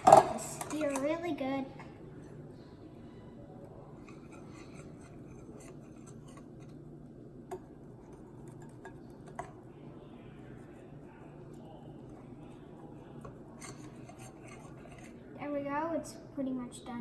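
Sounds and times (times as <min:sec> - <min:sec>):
whisk stirring batter in bowl: 0:03.6 - 0:15.6.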